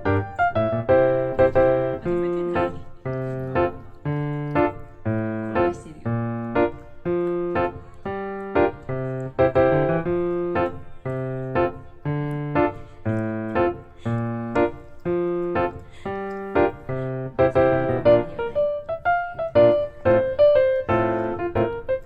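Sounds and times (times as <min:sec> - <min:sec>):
piano chords: 0:00.0 - 0:22.0.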